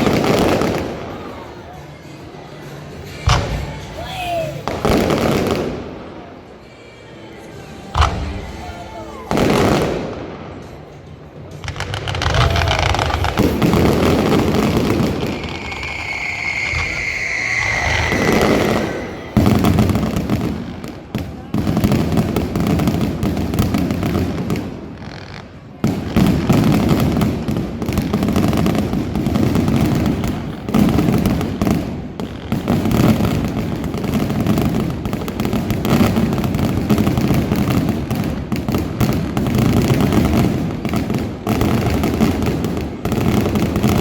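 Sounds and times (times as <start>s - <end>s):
fireworks bursting: 0.0s - 1.6s, 8.0s - 10.8s, 11.4s - 44.0s.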